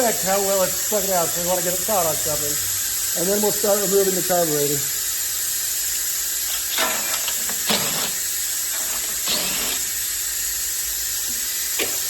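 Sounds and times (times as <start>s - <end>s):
steady hiss: 0.0s - 12.0s.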